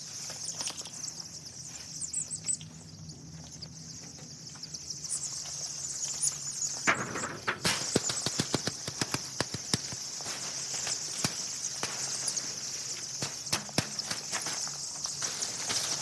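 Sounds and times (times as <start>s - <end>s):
chicks peeping: 0.0s - 16.0s
rapid sharp clicks and knocks: 6.8s - 10.0s.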